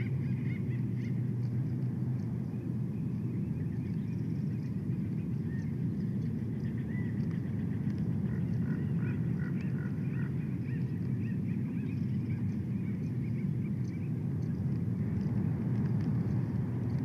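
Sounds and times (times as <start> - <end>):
steady low rumble: 0.0 - 17.0.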